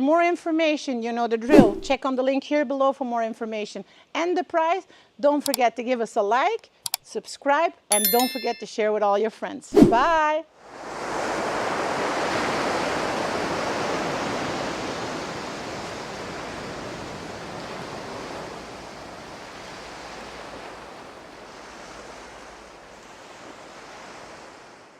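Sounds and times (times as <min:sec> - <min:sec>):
ocean surf washing in: 0:10.8 - 0:24.9.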